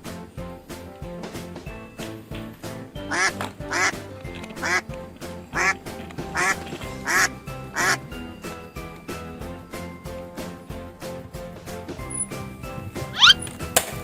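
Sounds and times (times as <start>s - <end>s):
background music: 0.0s - 14.0s
duck quacking: 3.0s - 8.1s.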